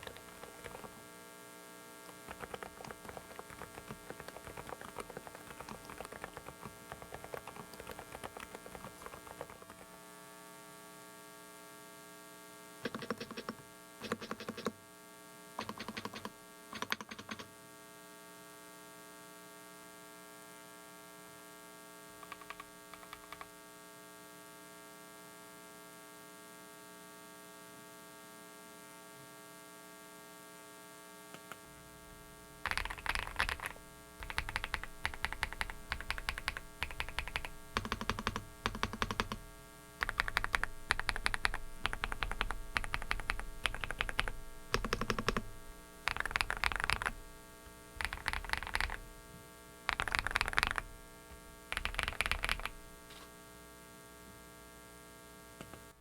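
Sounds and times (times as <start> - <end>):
mechanical keyboard keystroke clicks: 0.0 - 0.9, 2.1 - 9.8, 12.9 - 14.7, 15.6 - 17.5, 22.2 - 23.5, 31.4 - 31.6, 32.7 - 39.4, 40.0 - 45.5, 46.1 - 47.2, 48.0 - 49.0, 49.9 - 50.8, 51.7 - 52.8
steady electrical hum: 0.0 - 25.7, 27.0 - 56.0.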